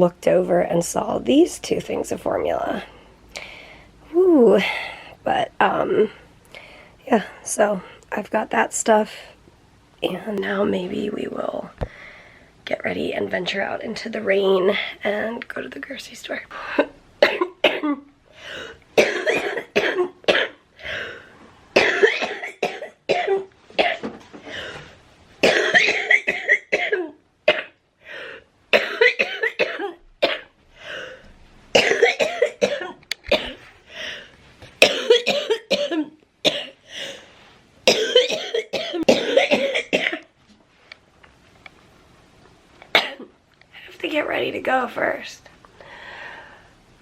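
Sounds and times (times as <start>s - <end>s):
woman coughing: 16.8s - 18.1s, 19.0s - 20.6s, 21.8s - 24.1s, 25.4s - 27.8s, 28.7s - 30.5s, 31.8s - 33.6s, 34.8s - 36.8s, 37.9s - 40.3s, 43.0s - 43.3s.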